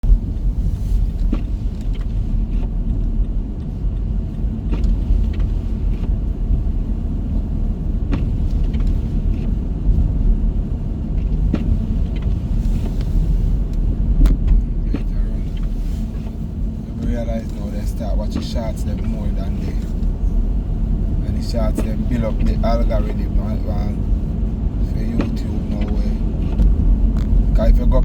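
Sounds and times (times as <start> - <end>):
car rumbling on road: 0.0 - 28.0.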